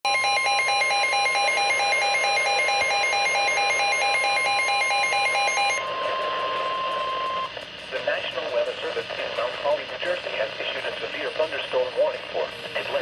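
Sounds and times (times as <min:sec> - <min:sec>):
steady alarm tone: 0:00.0 - 0:07.6
rapid pulsing beep: 0:00.1 - 0:07.5.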